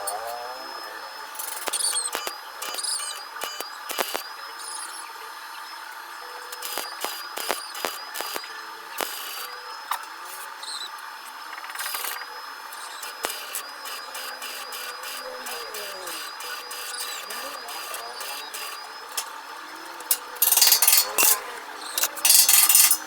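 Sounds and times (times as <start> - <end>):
power tool running: 0.0 - 5.2, 5.8 - 23.0
tools and metal parts clicking: 20.0 - 23.0.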